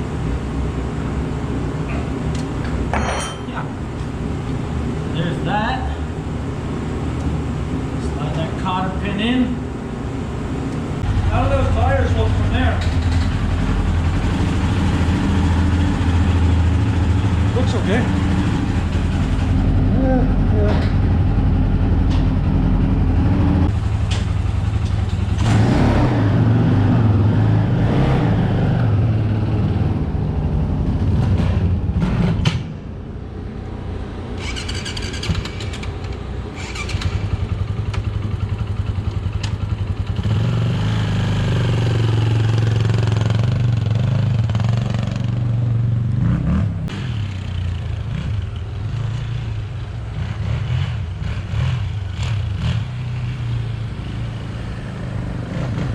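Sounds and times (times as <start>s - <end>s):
quad engine running: 11.0s - 32.4s, 34.2s - 55.9s.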